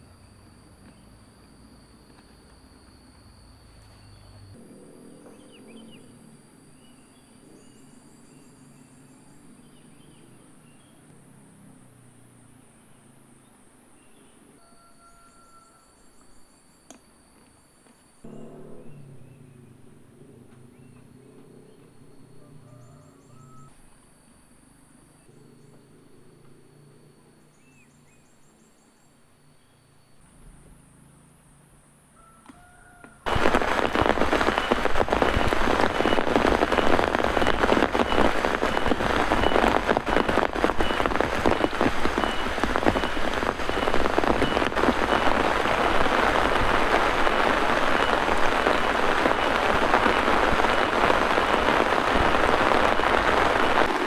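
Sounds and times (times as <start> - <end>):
thin high whine: 0.0 - 9.4, 15.7 - 30.8, 33.3 - 54.0
faint low hum: 0.0 - 33.1
insects trilling: 0.0 - 54.0
bird chirps: 3.6 - 11.1, 13.4 - 23.8, 34.0 - 45.5
high pulsing buzz: 17.9 - 31.7.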